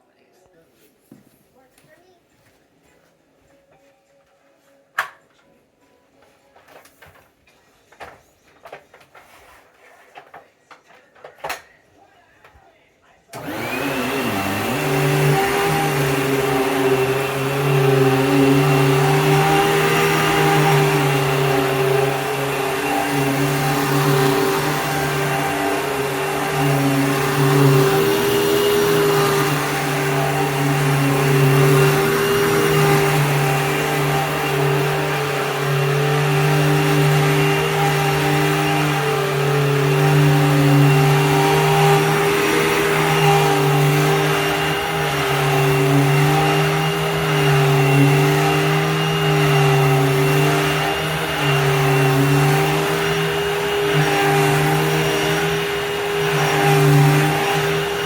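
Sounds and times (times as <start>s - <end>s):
vacuum cleaner motor humming: 13.3s - 58.0s.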